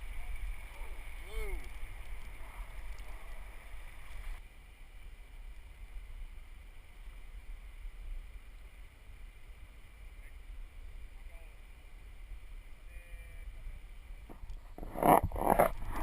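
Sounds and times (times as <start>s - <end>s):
muffled river rumble: 0.0s - 16.0s
steady rushing hiss: 0.0s - 16.0s
wind buffeting camera housing: 14.3s - 16.0s.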